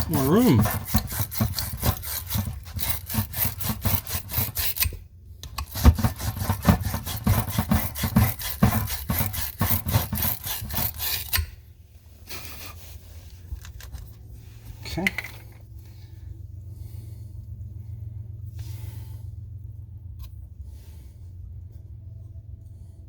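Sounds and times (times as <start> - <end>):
scrubbing a copper pipe: 0.0 - 4.9, 5.6 - 11.4.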